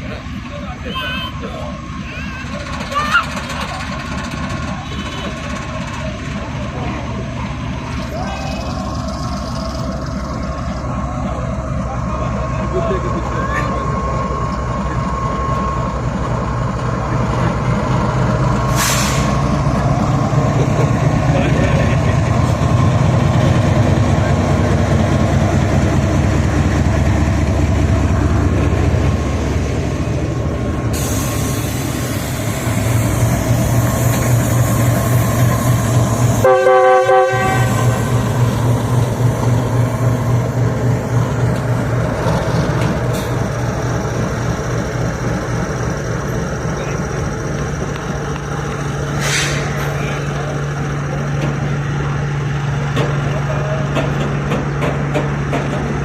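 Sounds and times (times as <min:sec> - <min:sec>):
diesel locomotive engine droning: 0:00.0 - 0:56.0
locomotive horn blast: 0:36.4 - 0:38.2.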